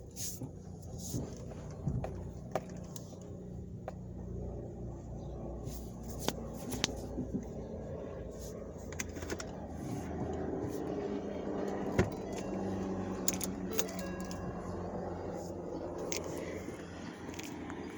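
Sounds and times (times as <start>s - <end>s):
car engine running: 0.0s - 17.9s.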